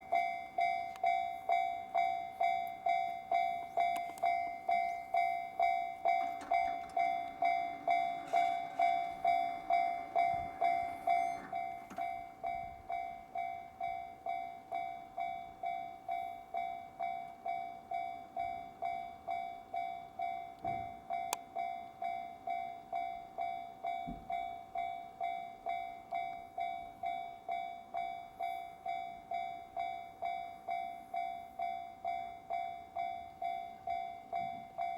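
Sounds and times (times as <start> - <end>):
level crossing bell ringing: 0.1 - 15.0.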